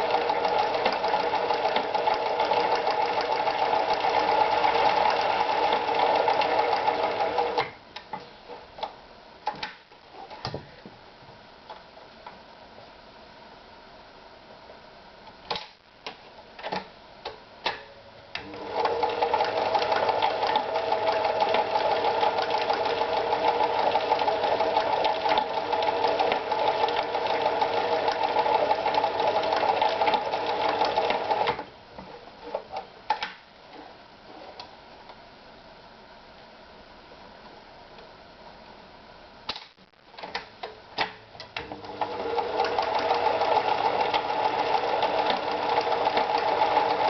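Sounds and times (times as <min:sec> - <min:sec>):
sewing machine running: 0:00.0 - 0:07.6, 0:18.4 - 0:31.6, 0:41.7 - 0:47.0.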